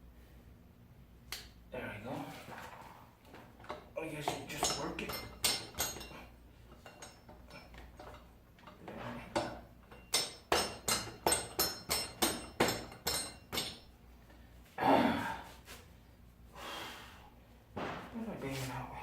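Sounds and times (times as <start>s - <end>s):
sharp hammering knocks: 9.0s - 13.9s, 17.8s - 18.2s.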